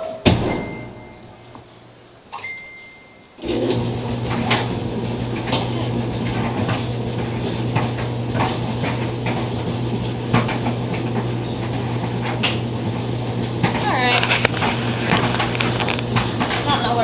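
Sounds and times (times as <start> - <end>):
appliance beep: 0.0 - 1.6, 2.3 - 3.5
appliance humming loudly: 3.4 - 17.0.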